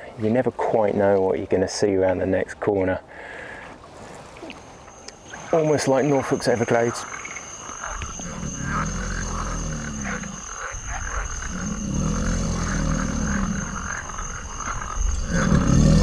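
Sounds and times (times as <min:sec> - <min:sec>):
steady high-pitched tone: 0:04.9 - 0:15.6
deep animal roar: 0:05.1 - 0:16.0.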